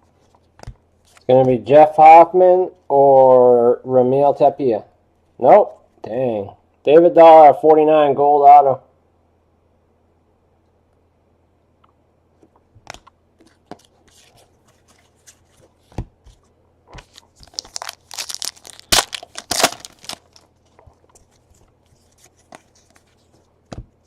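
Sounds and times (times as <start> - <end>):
card pack wrappers crinkling: 17.0 - 23.5
wrapper tearing: 17.1 - 20.5.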